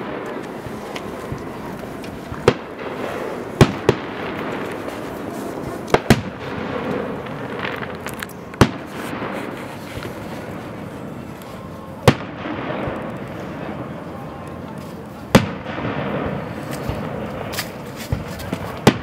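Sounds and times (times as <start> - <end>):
background murmur: 0.0 - 19.0
faint fireworks crackling: 0.0 - 19.0
fireworks bangs: 0.0 - 19.0.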